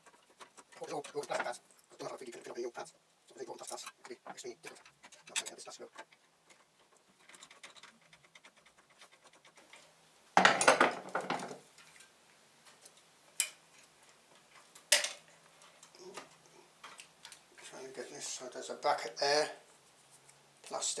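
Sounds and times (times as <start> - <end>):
plastic and metal parts clattering: 0.0 - 2.6, 3.5 - 9.8.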